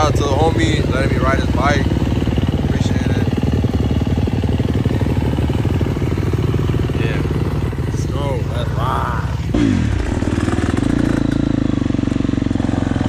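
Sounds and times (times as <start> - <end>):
dirt bike engine idling: 0.0 - 13.0.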